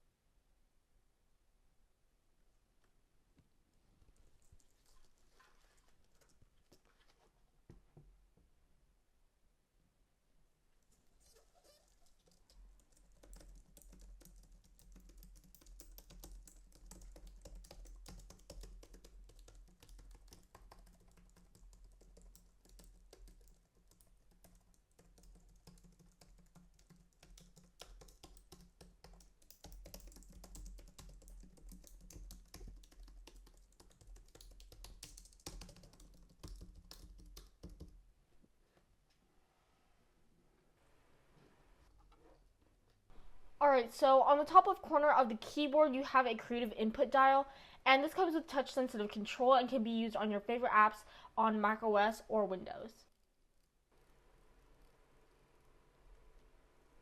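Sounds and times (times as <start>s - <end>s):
keyboard typing clicks: 12.2s - 37.9s.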